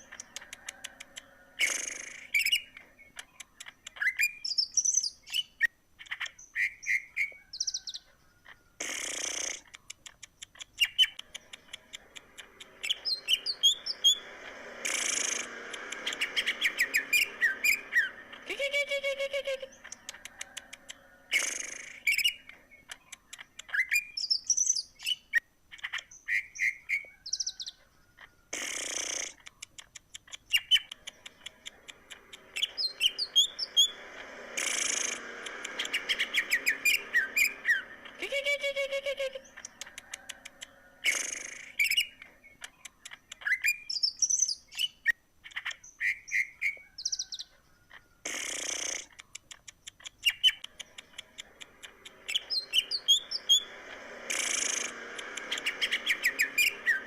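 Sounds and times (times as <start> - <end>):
harsh buzzy bird call: 0.0 - 2.8, 8.7 - 9.9, 10.7 - 22.5, 28.4 - 29.5, 30.3 - 42.2, 48.1 - 49.3, 50.1 - 57.0
bird singing varied song: 0.0 - 57.0
harsh hissing burst: 12.2 - 18.6, 31.9 - 38.3, 51.4 - 57.0.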